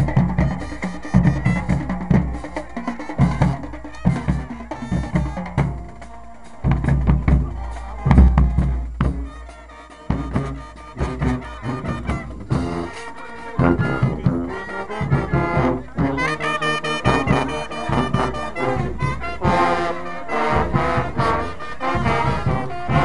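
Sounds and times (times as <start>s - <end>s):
drumline playing fast cadence: 0.0s - 23.0s
booming bass drum: 6.7s - 9.6s.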